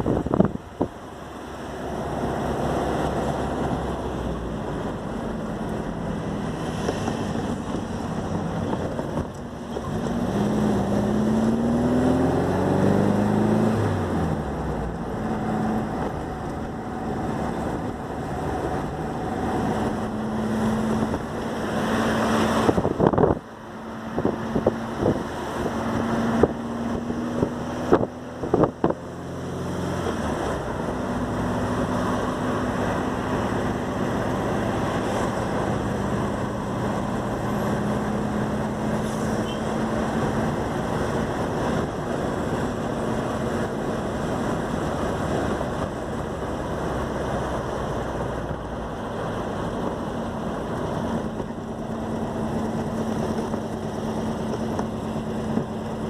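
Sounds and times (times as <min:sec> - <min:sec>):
wind noise: 0:00.0 - 0:01.3, 0:01.9 - 0:56.0
car engine pulling hard: 0:00.0 - 0:56.0.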